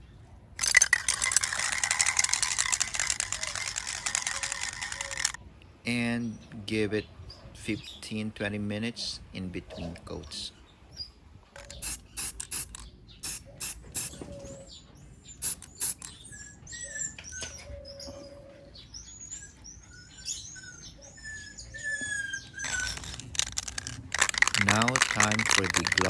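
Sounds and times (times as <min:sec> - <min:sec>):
short sharp bursts: 0:11.8 - 0:14.2, 0:15.4 - 0:16.1.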